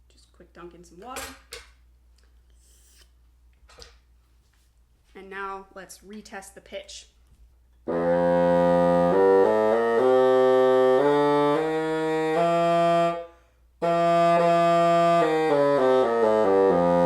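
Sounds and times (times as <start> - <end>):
bassoon playing notes: 7.8 - 17.0.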